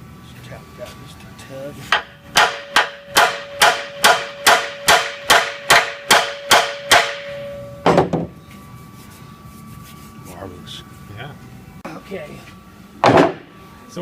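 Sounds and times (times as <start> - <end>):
hammer tapping on ringing steel: 1.9 - 7.8.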